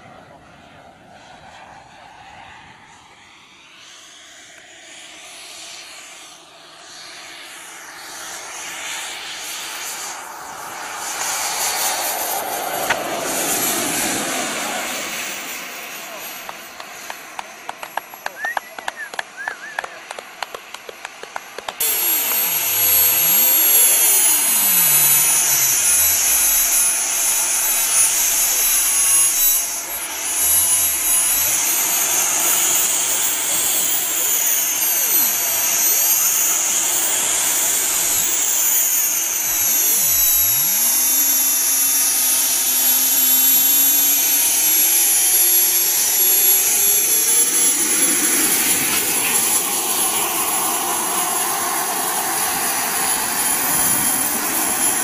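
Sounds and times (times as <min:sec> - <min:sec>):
model jet turbines whining: 0:00.0 - 0:55.0.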